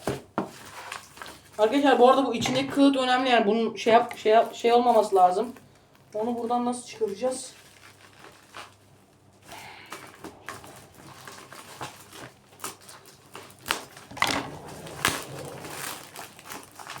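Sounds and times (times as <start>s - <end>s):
cardboard box rustling and scraping: 10.5s - 17.0s.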